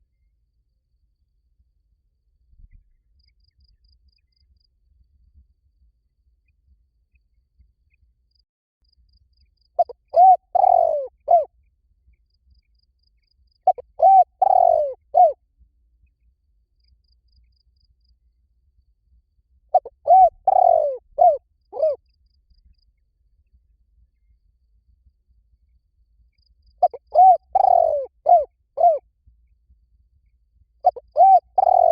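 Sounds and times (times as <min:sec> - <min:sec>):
dove cooing: 0:09.8 - 0:11.5, 0:13.7 - 0:15.4, 0:19.7 - 0:22.0, 0:26.8 - 0:29.0, 0:30.8 - 0:31.9.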